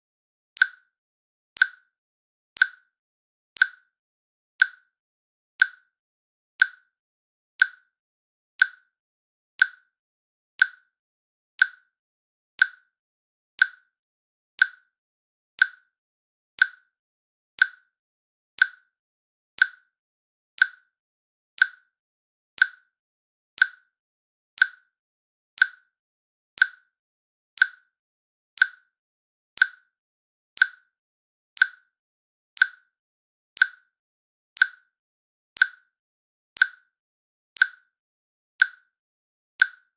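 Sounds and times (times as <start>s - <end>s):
timer clicks: 0.6s - 1.0s, 1.6s - 1.9s, 2.6s - 3.0s, 3.6s - 4.0s, 4.6s - 4.9s, 5.6s - 5.9s, 6.6s - 7.0s, 7.6s - 7.9s, 8.6s - 9.0s, 9.6s - 10.0s, 10.6s - 11.0s, 11.6s - 12.0s, 12.6s - 13.0s, 13.6s - 14.0s, 14.6s - 15.0s, 15.6s - 16.0s, 16.6s - 17.0s, 17.6s - 18.0s, 18.6s - 19.0s, 19.6s - 20.0s, 20.6s - 21.0s, 21.6s - 22.0s, 22.6s - 23.0s, 23.6s - 24.0s, 24.6s - 25.0s, 25.6s - 26.0s, 26.6s - 27.0s, 27.6s - 28.0s, 28.6s - 29.0s, 29.6s - 30.0s, 30.6s - 31.0s, 31.6s - 32.0s, 32.6s - 33.0s, 33.6s - 34.0s, 34.6s - 35.0s, 35.6s - 36.0s, 36.6s - 37.0s, 37.6s - 38.0s, 38.6s - 39.0s, 39.6s - 39.9s.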